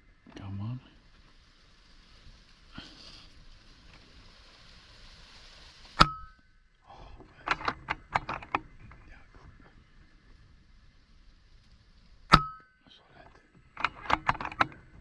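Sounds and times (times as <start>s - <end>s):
sharp clicks and knocks: 7.2s - 9.6s, 12.2s - 15.0s.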